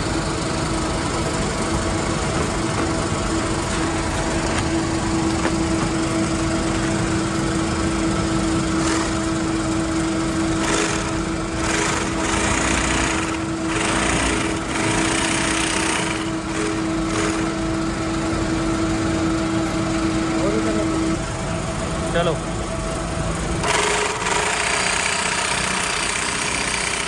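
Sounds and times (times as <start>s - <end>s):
machinery humming: 0.0s - 27.0s.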